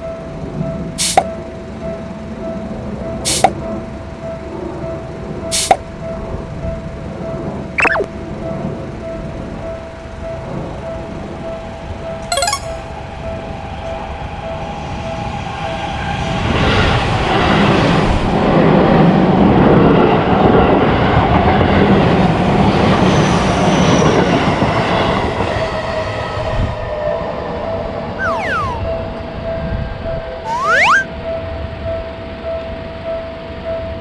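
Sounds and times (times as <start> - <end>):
level crossing bell ringing: 12.3 - 13.0.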